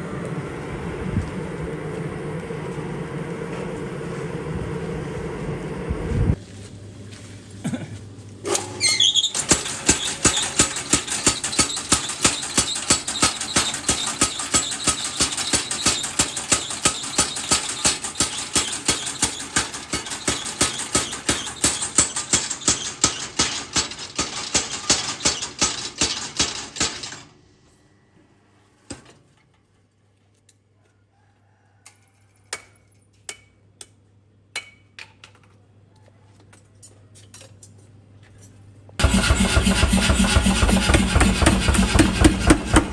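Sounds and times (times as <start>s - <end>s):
low hum: 0.0s - 8.3s
forging hammer pounding steel: 9.4s - 27.2s, 39.0s - 42.9s.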